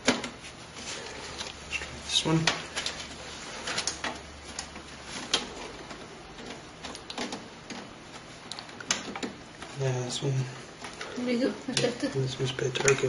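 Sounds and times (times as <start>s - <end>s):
computer parts clicking and rattling: 2.2s - 9.8s, 10.9s - 13.0s.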